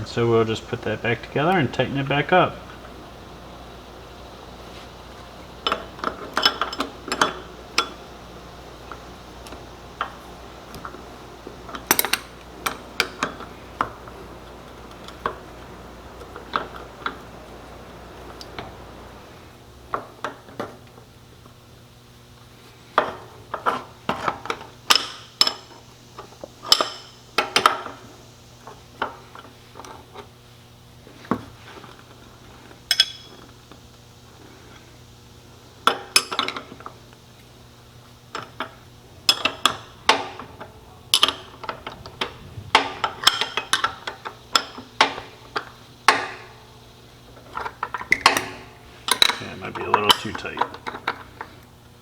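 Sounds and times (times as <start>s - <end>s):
wrench and metal hardware clanking: 47.5s - 51.2s.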